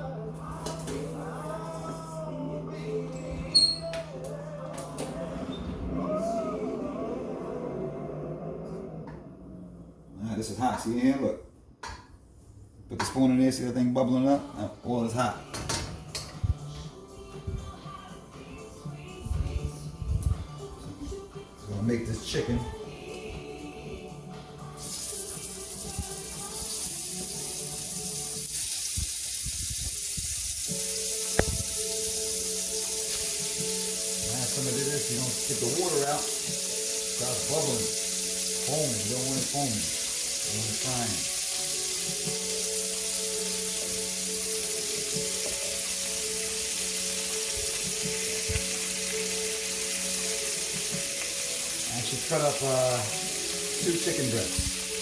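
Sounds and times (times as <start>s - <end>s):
low hum: 1.2s - 10.8s
chicken sizzling in hot oil: 24.7s - 55.0s.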